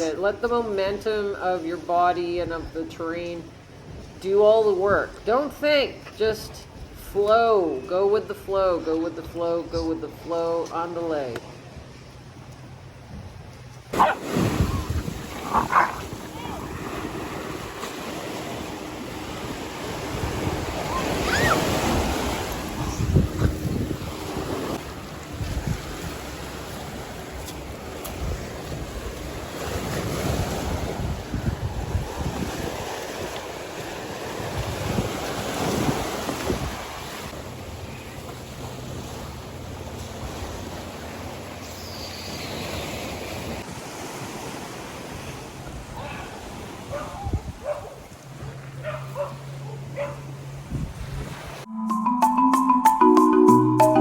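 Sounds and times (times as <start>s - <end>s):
ocean surf washing ashore: 13.8s - 54.0s.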